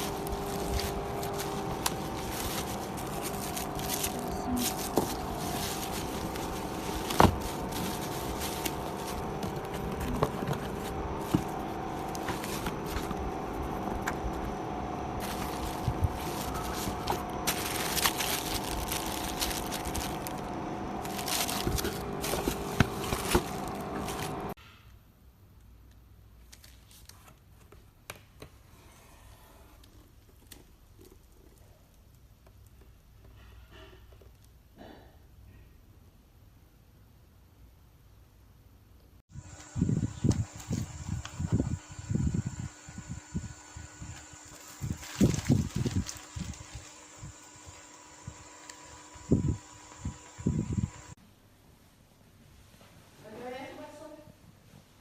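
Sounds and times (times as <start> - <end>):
knocks and scrapes of handling: 0.0 - 14.5, 21.0 - 24.6
steady hum: 0.0 - 24.6, 39.4 - 51.2.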